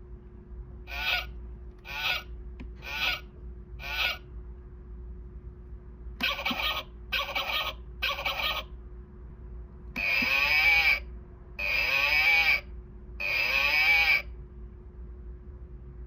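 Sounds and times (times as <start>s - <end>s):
clock playing animal call: 0.9s - 4.3s, 6.2s - 8.7s, 10.0s - 14.3s.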